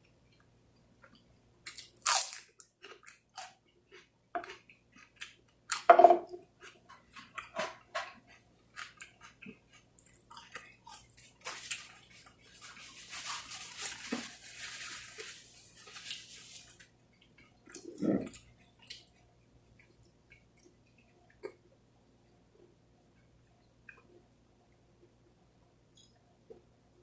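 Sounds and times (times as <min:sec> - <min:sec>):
wet chewing and lip smacks: 0:17.1 - 0:21.7.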